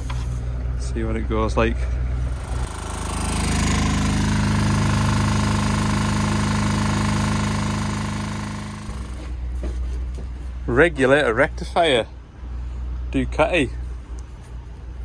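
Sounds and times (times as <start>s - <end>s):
machine hammering rattle: 2.2s - 9.5s.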